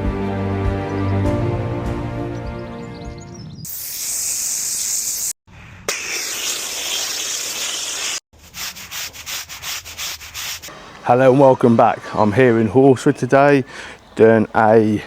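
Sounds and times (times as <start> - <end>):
pressure washer spray hissing: 3.7 - 5.3.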